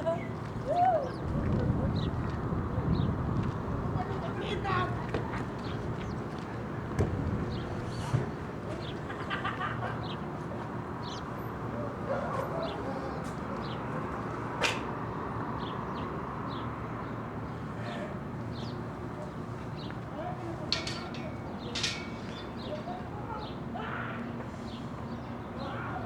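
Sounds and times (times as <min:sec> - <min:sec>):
birds chirping: 0:00.6 - 0:10.4, 0:11.0 - 0:11.8, 0:18.4 - 0:23.7.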